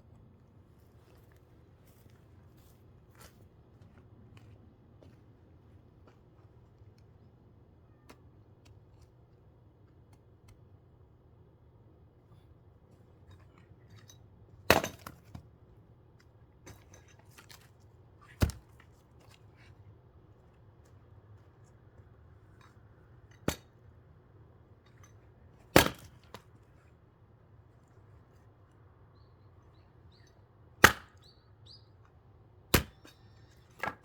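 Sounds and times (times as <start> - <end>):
splitting tool striking a log: 25.8 - 26.2, 30.8 - 31.2, 32.7 - 33.1.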